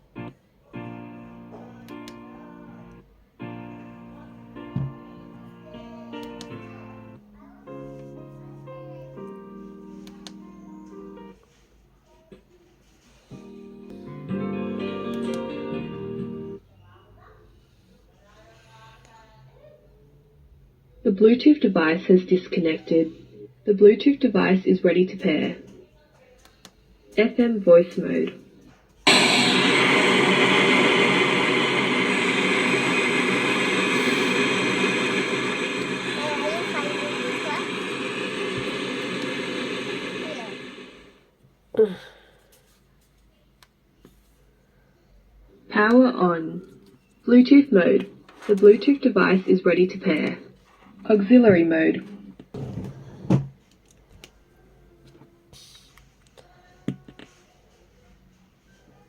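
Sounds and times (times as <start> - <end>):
radio static hiss: 29.1 - 41.2.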